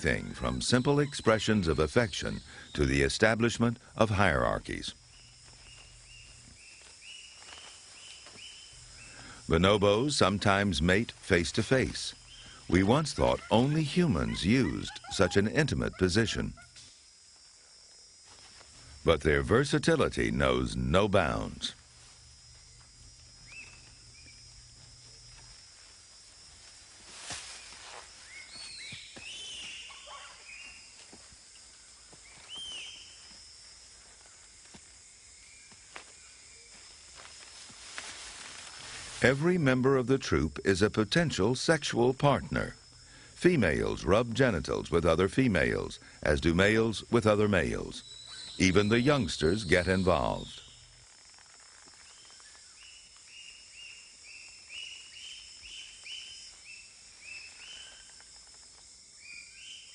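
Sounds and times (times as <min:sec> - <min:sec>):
high insect buzz: 0:00.0 - 0:59.9
bonobos high-pitched calls: 0:12.2 - 0:16.8, 0:28.3 - 0:30.8.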